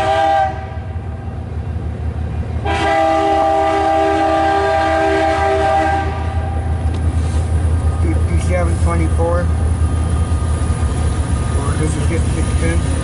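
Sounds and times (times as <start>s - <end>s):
train horn blast: 0.0s - 1.0s, 2.6s - 6.7s
train rumble: 0.0s - 13.0s.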